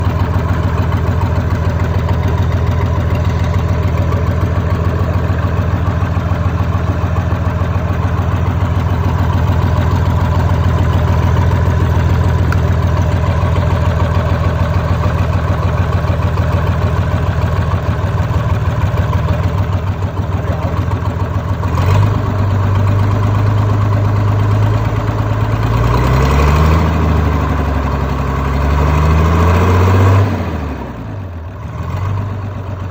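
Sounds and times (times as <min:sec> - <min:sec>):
diesel engine idling and revving: 0:00.0 - 0:32.9.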